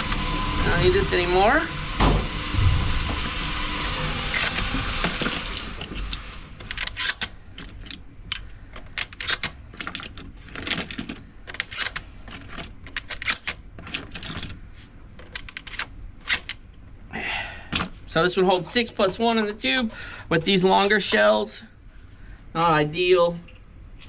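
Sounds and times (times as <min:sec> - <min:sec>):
brief rushing noise: 0:02.5 - 0:03.4.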